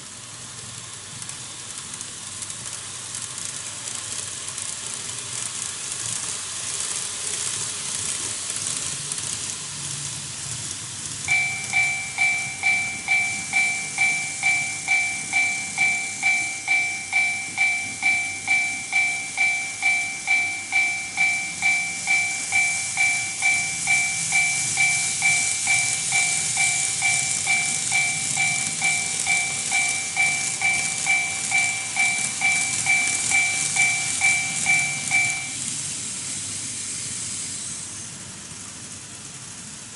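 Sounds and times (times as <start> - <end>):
hiss of model trains running: 0.0 - 39.9
level crossing warning bell: 11.3 - 35.7.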